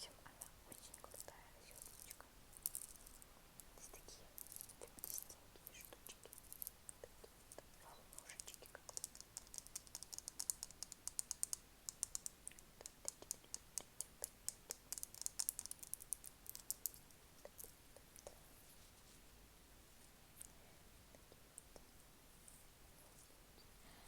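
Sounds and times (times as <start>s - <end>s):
crisp tapping clicks: 0.4s - 18.4s.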